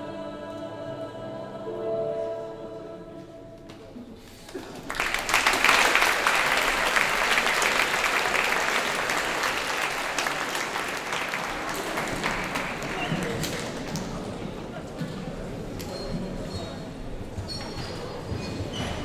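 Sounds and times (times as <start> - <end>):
choir singing: 0.0 - 3.9
audience applause: 4.4 - 14.6.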